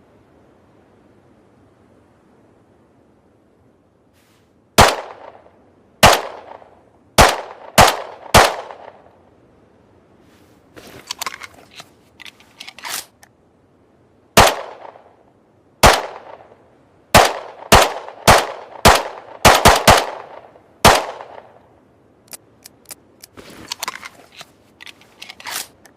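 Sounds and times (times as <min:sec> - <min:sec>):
pistol gunshots: 0:04.8 - 0:05.4, 0:06.0 - 0:09.0, 0:14.4 - 0:15.1, 0:15.8 - 0:16.5, 0:17.1 - 0:21.5
light mechanical clicks: 0:22.2 - 0:25.9.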